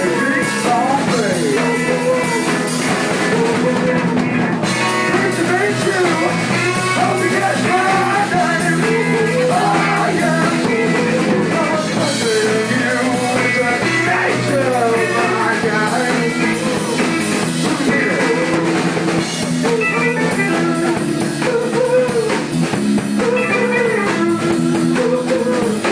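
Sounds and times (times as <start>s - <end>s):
live rock band playing: 0.0s - 25.9s
person singing: 0.0s - 25.9s.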